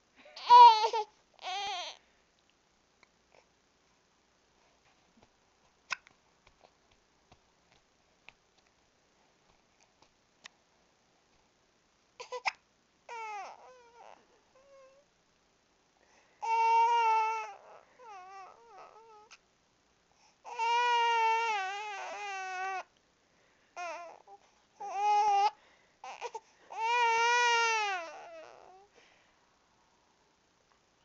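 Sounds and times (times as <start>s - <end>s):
baby crying: 0.4s - 2.0s, 12.2s - 15.0s, 16.4s - 19.4s, 20.5s - 22.9s, 23.8s - 28.9s.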